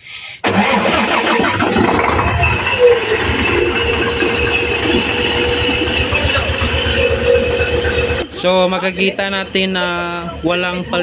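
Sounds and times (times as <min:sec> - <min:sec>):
diesel engine running: 0:00.4 - 0:11.0.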